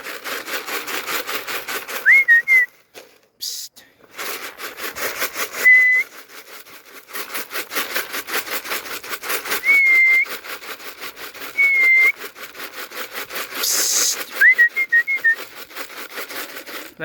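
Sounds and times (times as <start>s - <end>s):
person whistling: 2.0s - 2.7s, 5.6s - 6.1s, 9.6s - 10.4s, 11.5s - 12.2s, 13.6s - 15.4s
rising chirping whistle: 9.6s - 10.2s, 11.6s - 12.1s, 13.6s - 15.4s
short hiss: 13.6s - 14.3s.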